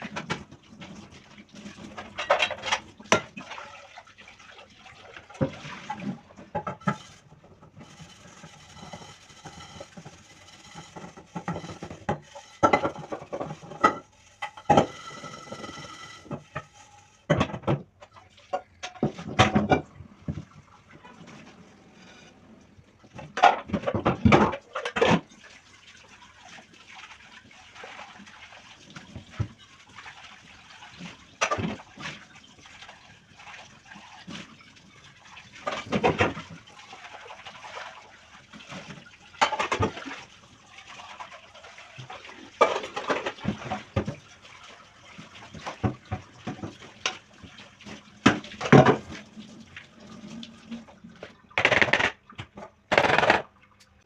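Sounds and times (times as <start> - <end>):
water splashing in a sink: 0.0 - 21.8, 22.6 - 54.0
dishes being handled: 7.8 - 16.7.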